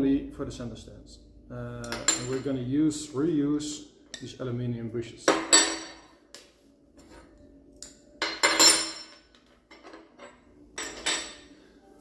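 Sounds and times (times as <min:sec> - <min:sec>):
small metal parts clinking: 0:07.9 - 0:11.5.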